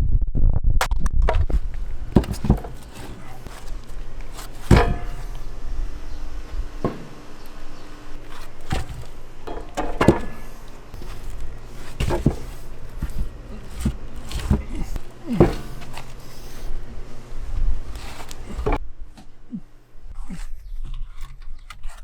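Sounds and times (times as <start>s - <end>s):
low steady hum: 1.0s - 22.0s
sharp knocks and thuds: 1.2s - 16.9s, 17.7s - 19.4s.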